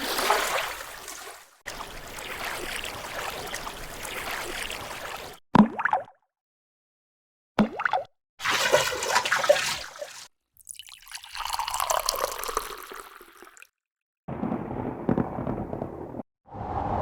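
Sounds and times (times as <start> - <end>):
water splashing or bubbling: 0.0 - 6.2, 7.6 - 13.7
water drip plops: 7.6 - 13.7.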